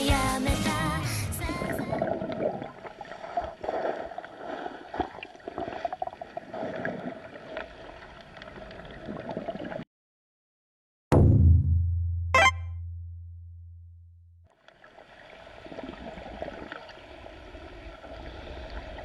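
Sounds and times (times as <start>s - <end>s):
underwater river gurgling: 0.0s - 9.8s, 14.5s - 19.0s.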